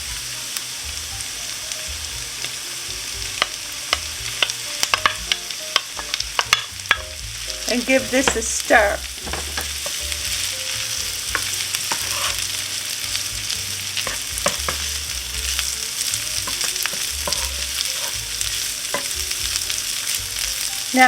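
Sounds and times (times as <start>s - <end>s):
food sizzling in a frying pan: 0.0s - 21.0s.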